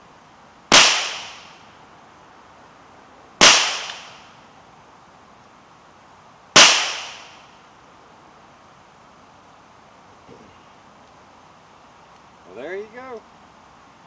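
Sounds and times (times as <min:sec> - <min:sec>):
pistol shots with short echo: 0:06.6 - 0:07.3.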